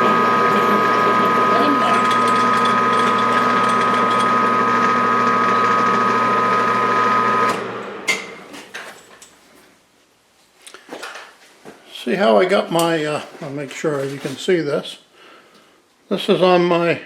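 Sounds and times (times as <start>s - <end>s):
metal lathe gear whine: 0.0s - 8.0s.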